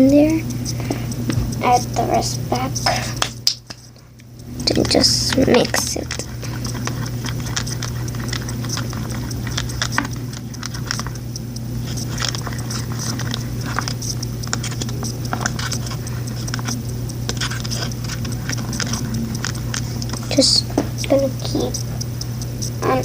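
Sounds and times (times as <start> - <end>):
steady low hum: 0.0 - 23.0.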